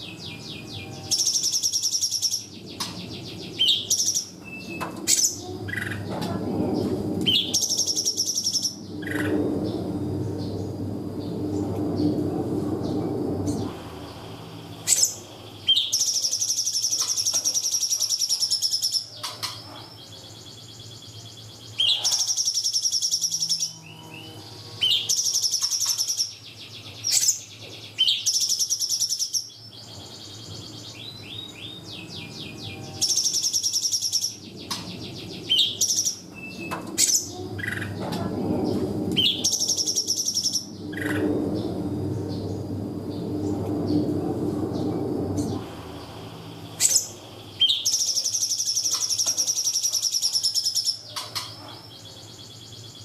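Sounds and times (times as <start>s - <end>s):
bird chirps: 0.0s - 9.8s, 12.8s - 43.6s, 44.8s - 53.0s
bird trilling: 14.6s - 19.5s, 30.9s - 38.3s, 39.2s - 41.7s, 45.4s - 52.0s.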